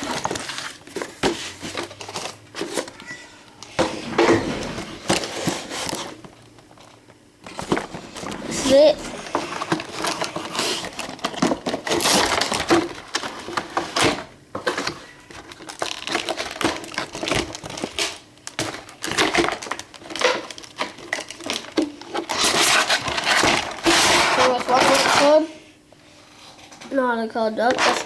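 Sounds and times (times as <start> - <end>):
toy packaging crinkling: 0.0 - 2.8, 14.6 - 25.4.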